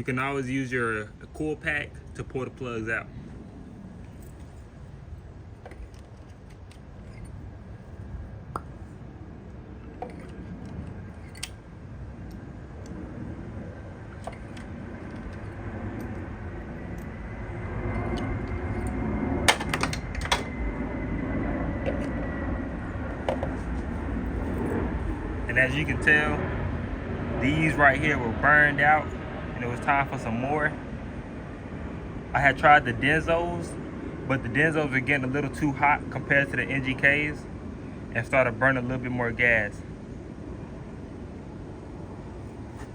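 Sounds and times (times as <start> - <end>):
low rumbling background noise: 0.0 - 42.9
tools clicking and clinking: 9.8 - 11.6, 14.1 - 16.2, 17.9 - 20.6.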